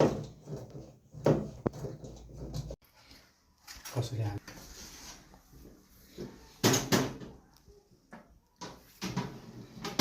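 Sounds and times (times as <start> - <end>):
washing machine door knocks and clunks: 0.0 - 2.8.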